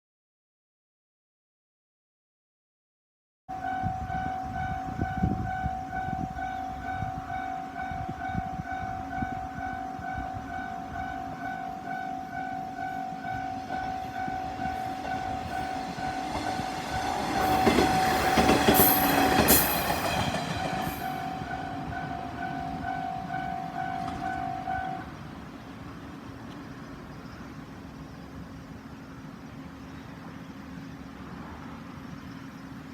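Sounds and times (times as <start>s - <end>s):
level-crossing warning bell ringing: 3.5s - 25.2s
railcar passing with rail noise: 3.5s - 32.9s.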